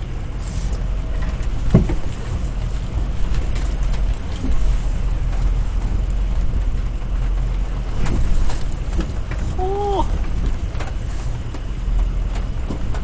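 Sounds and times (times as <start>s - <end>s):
truck engine rumbling: 0.0s - 13.0s
light knocks and creaks: 0.6s - 6.7s.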